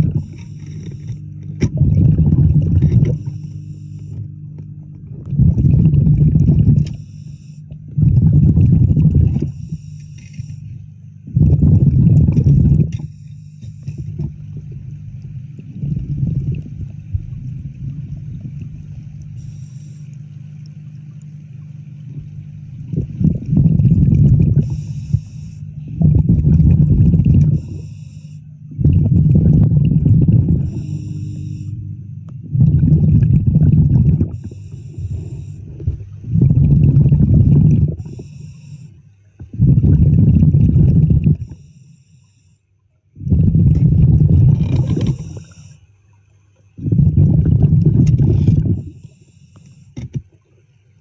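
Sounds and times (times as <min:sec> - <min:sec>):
diver exhaling bubbles: 0:00.0 - 0:03.4, 0:05.0 - 0:07.0, 0:07.9 - 0:09.8, 0:11.3 - 0:13.1, 0:14.0 - 0:19.4, 0:22.1 - 0:27.8, 0:28.7 - 0:31.5, 0:32.4 - 0:38.5, 0:39.5 - 0:41.5, 0:43.2 - 0:45.7, 0:46.8 - 0:49.0
steady low hum: 0:00.0 - 0:51.0.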